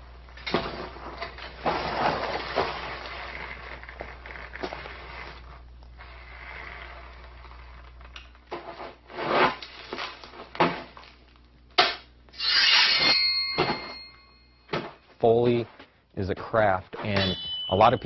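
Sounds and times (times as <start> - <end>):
thin ringing tone: 12.4 - 15.1, 17.1 - 18.0.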